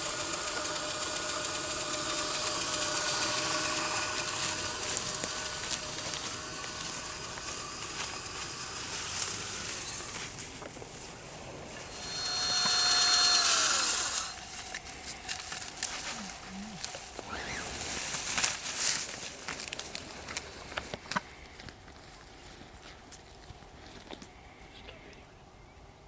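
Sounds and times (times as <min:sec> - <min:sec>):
cordless drill motor whine: 0:00.0 - 0:21.3.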